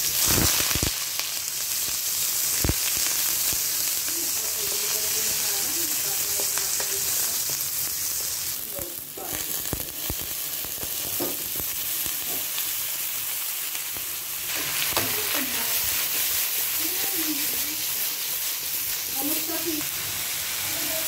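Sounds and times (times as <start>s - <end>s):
chicken feet sizzling in oil: 0.0s - 21.0s.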